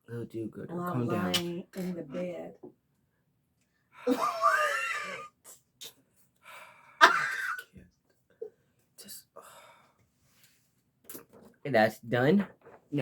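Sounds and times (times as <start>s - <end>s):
person laughing wheezily: 4.0s - 5.4s, 7.0s - 7.7s.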